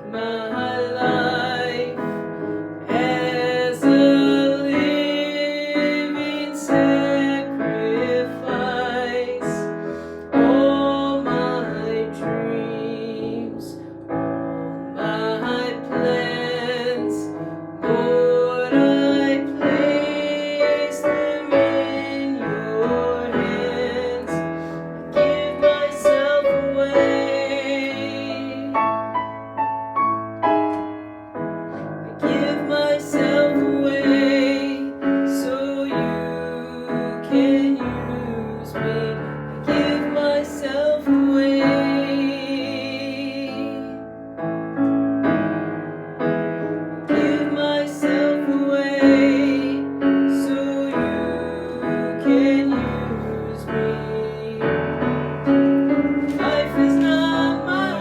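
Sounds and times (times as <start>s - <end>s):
slow piano and keyboard music: 0.0s - 58.0s.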